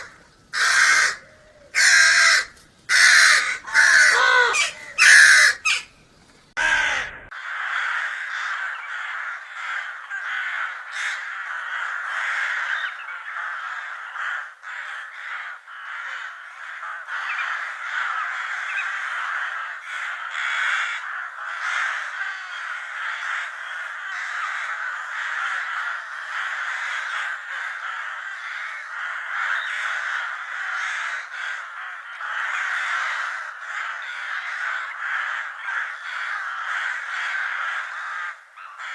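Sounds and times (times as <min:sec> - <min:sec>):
crows cawing: 0:00.0 - 0:38.9.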